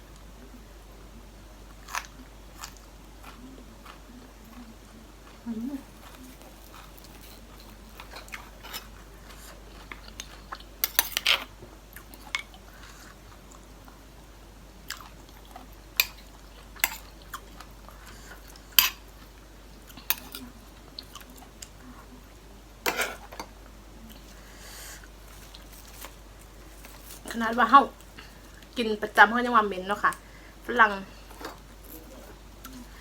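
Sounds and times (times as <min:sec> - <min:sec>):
chewing food: 0:01.6 - 0:22.2.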